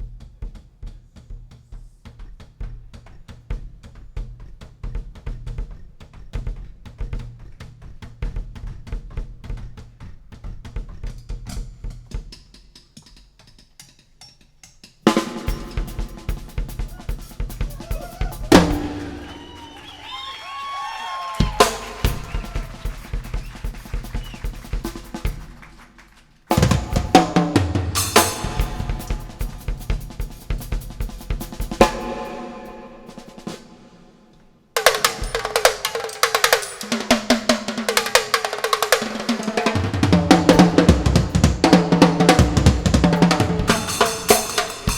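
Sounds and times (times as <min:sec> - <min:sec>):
bass-heavy music with drums: 0:00.0 - 0:12.6, 0:15.4 - 0:18.8, 0:28.0 - 0:32.0, 0:40.4 - 0:44.9.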